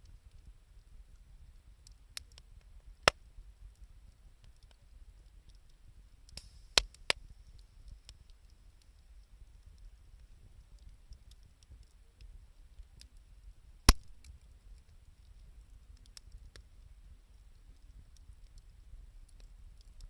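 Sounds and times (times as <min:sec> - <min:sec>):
wood fire crackling: 0:00.1 - 0:20.0
fire popping: 0:00.3 - 0:20.0
brief hiss: 0:06.4 - 0:06.9.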